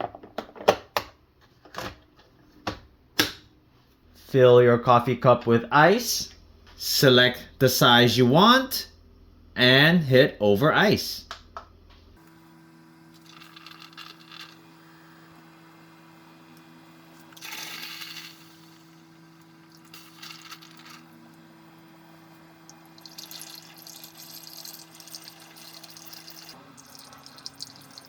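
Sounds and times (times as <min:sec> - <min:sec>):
coffee maker pump hum: 0:11.6 - 0:28.0
coffee splashing onto ice: 0:22.9 - 0:28.0.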